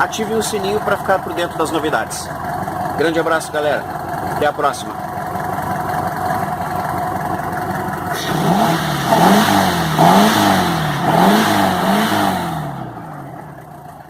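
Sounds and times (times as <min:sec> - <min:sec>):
car engine revving: 0:05.5 - 0:14.0.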